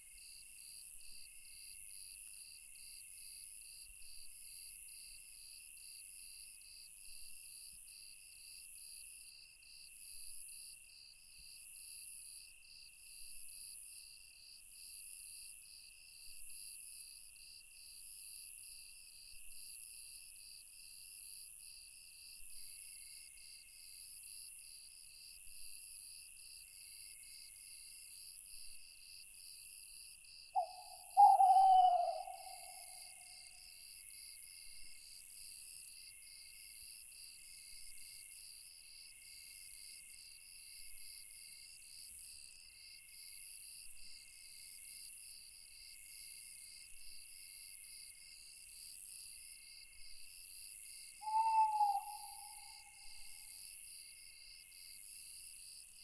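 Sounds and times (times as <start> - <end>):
crickets and insects chirping: 30.3 - 35.1, 49.6 - 55.9
owl hoot: 30.6 - 33.4, 51.2 - 53.2.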